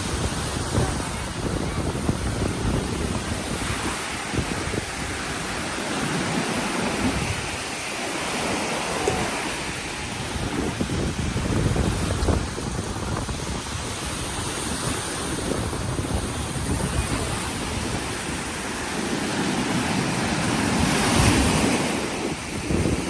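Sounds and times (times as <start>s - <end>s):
surf washing onto beach: 0.0s - 23.0s
wind buffeting microphone: 0.0s - 23.0s.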